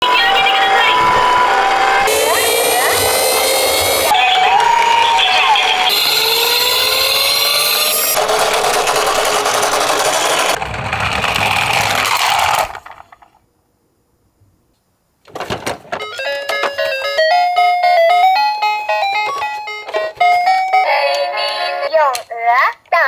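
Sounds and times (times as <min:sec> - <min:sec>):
rising siren tone: 0:00.0 - 0:08.2
toy cars rattling: 0:00.0 - 0:13.4
tinkling music jingle: 0:16.0 - 0:22.0.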